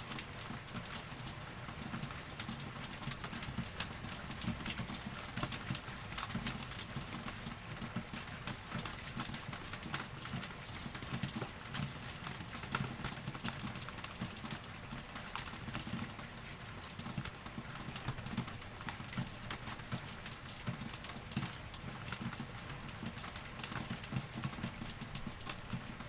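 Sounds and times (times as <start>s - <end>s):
rain falling: 0.0s - 26.0s.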